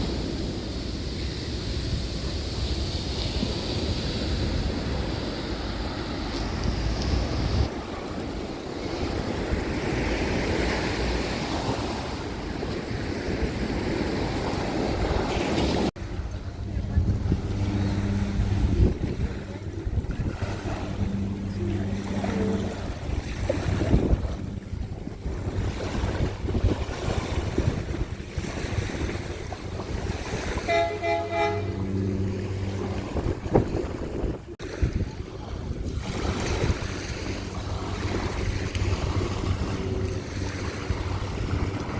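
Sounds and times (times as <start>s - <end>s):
ocean waves breaking on shore: 0.0s - 41.9s
surf washing: 0.0s - 41.9s
wind on microphone: 0.0s - 41.9s
warbling horn-like tone: 16.0s - 34.4s
low pitched hum: 16.0s - 34.6s, 35.3s - 41.9s.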